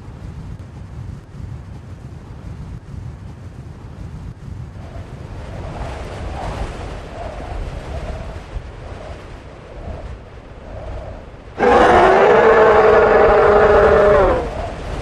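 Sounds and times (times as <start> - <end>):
low wind rumble: 0.0 - 15.0
creature bellowing: 11.6 - 14.6.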